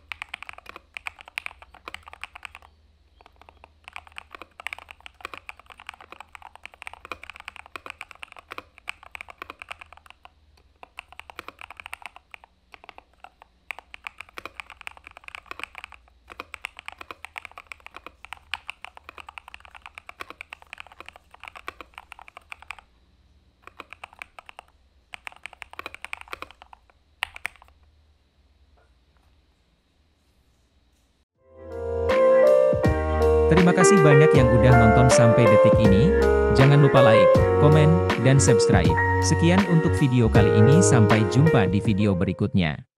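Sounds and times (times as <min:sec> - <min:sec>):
typing on a mechanical keyboard: 0:00.0 - 0:22.9, 0:23.6 - 0:27.8.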